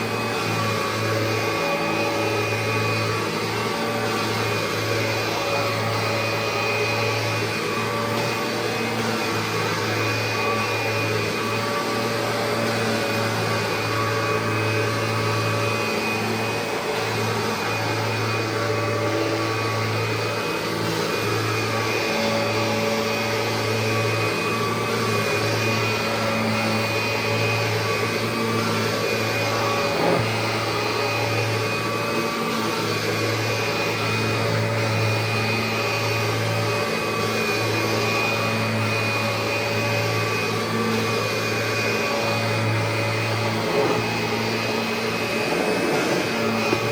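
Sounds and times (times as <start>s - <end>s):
vacuum cleaner running: 0.0s - 46.9s.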